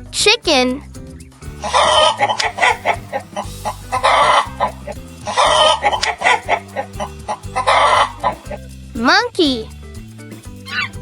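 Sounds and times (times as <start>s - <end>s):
bouncy children's music: 0.0s - 11.0s
chicken squawking and clucking: 1.6s - 8.7s, 10.7s - 11.0s.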